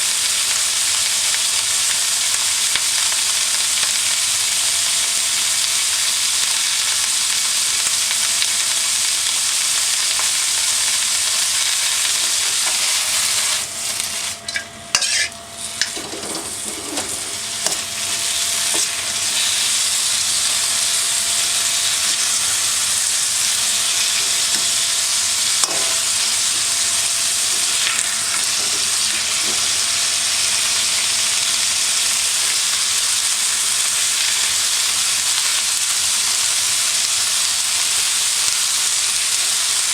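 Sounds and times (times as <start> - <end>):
food sizzling in a wok: 0.0 - 39.9
scrapes and clinks: 14.4 - 17.8.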